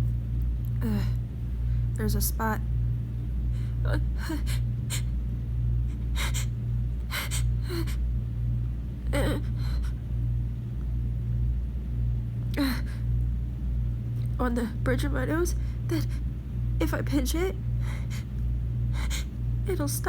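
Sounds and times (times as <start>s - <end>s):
low hum: 0.0s - 20.0s
woman gasping breaths: 6.0s - 6.5s, 7.1s - 8.0s.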